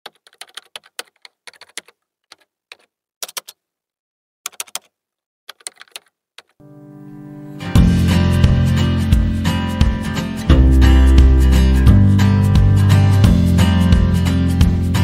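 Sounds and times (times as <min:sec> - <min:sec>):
keyboard key clicks: 0:00.1 - 0:03.6, 0:04.5 - 0:04.9, 0:05.5 - 0:06.6.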